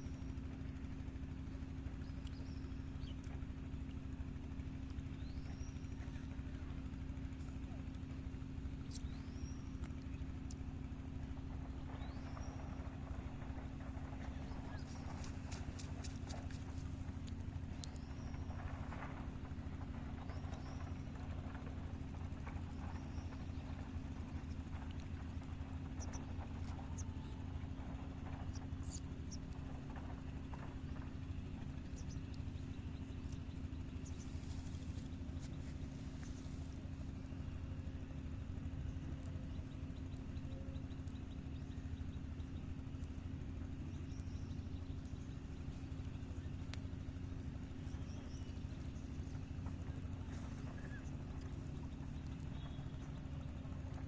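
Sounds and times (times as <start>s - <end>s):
motor humming: 0.0s - 54.0s
faint clicks: 9.7s - 10.7s, 13.9s - 23.8s, 24.4s - 31.1s.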